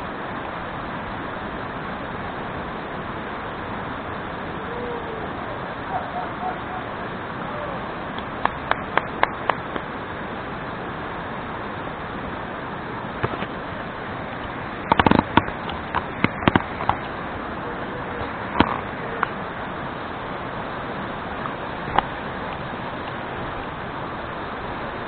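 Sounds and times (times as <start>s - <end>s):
steady rushing noise: 0.0s - 25.0s
sharp clicks and knocks: 14.8s - 17.1s, 18.6s - 19.3s.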